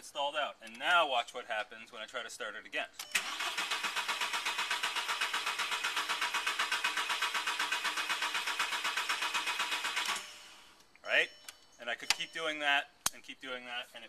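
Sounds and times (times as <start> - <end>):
car engine cranking on starter: 3.0 - 10.8.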